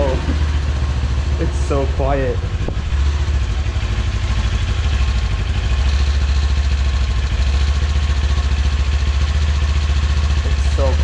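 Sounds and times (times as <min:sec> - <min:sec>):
motorcycle engine idling: 0:00.0 - 0:11.0.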